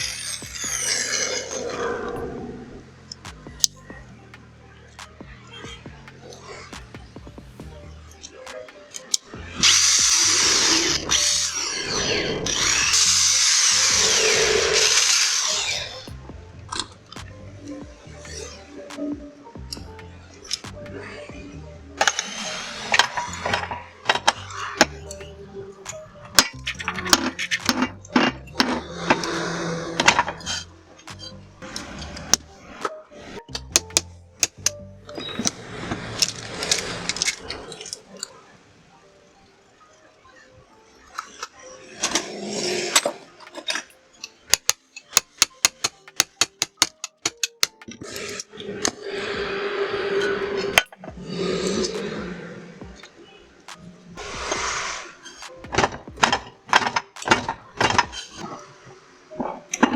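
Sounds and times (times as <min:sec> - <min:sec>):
background music: 0:00.0 - 0:59.9
hiss: 0:09.6 - 0:16.1, 0:22.0 - 0:23.6, 0:54.2 - 0:55.9.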